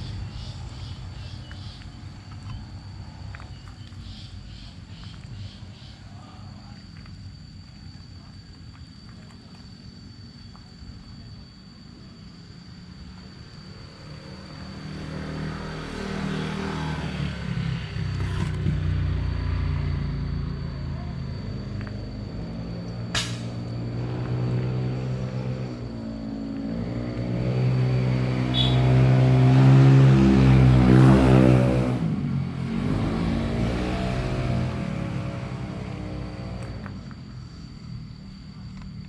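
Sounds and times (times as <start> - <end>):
vehicle engine passing by: 14.2 - 37.1
sharp click: 23.1 - 23.6.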